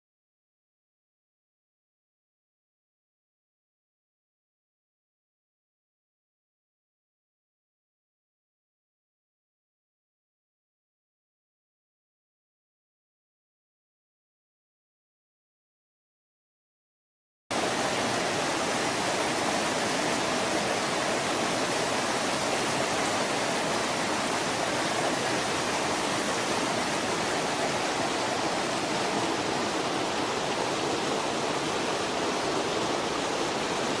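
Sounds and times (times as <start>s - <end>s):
creek rushing over waterfalls: 17.5s - 34.0s.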